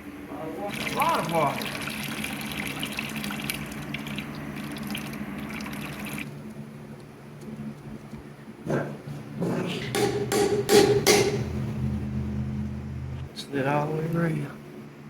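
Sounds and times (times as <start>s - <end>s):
water pouring and trickling: 0.7s - 6.3s.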